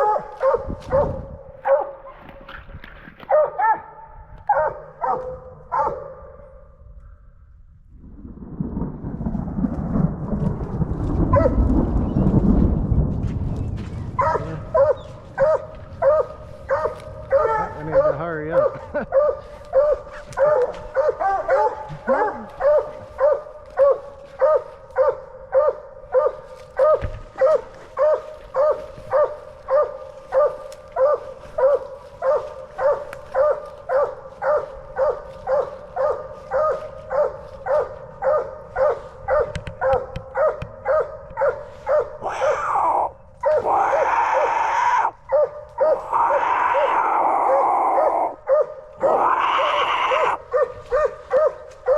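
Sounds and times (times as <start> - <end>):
hound barking: 0.0 - 2.5, 3.2 - 6.7, 11.3 - 11.7, 14.0 - 51.9
rushing rustling noise: 8.1 - 18.0.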